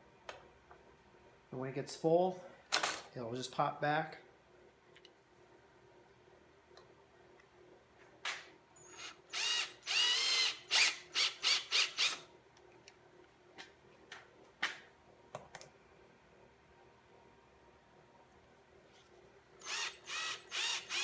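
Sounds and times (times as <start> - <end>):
whirring ratcheting mechanism: 8.8 - 12.2, 19.6 - 21.0.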